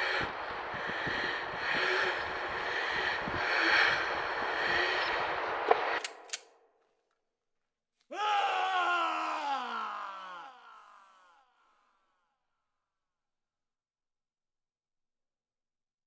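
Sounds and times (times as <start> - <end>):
sharp cracks: 6.0 - 6.6.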